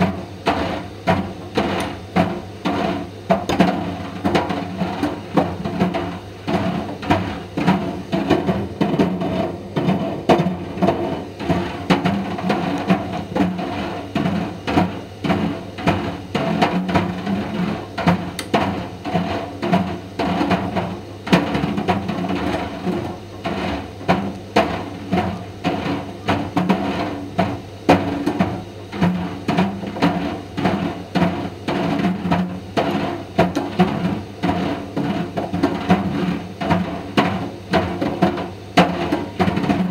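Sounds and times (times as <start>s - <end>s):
dryer ball knocking in drum: 0.0s - 39.9s.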